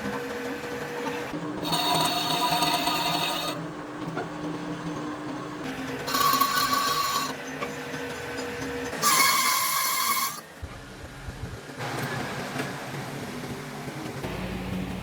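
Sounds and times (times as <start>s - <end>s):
machine tool cutting screech: 1.6s - 3.6s, 6.1s - 7.4s, 9.0s - 10.5s.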